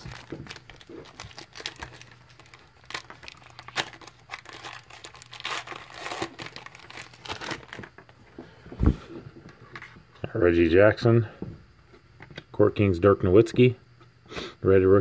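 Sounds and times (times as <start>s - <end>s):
plastic wrapper crinkling and tearing: 0.0s - 8.2s.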